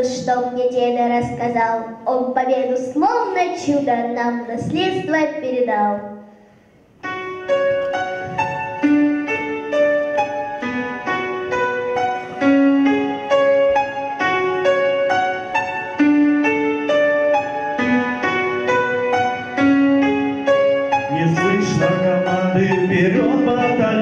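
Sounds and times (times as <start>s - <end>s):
keyboard melody: 6.5s - 24.0s
lower accompaniment: 6.8s - 24.0s.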